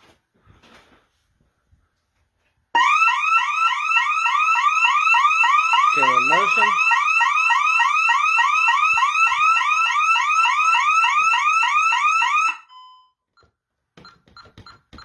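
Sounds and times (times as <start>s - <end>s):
alarm siren whooping: 2.8s - 12.8s
short beep: 12.7s - 15.0s.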